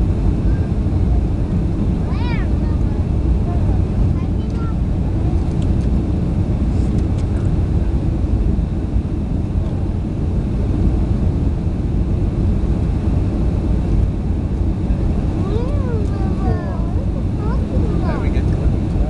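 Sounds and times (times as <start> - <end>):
airliner cabin engine rumble: 0.0 - 19.0.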